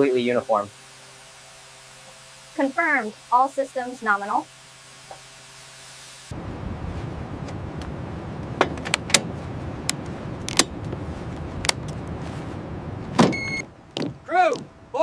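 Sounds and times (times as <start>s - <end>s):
low machinery rumble: 6.3s - 15.0s.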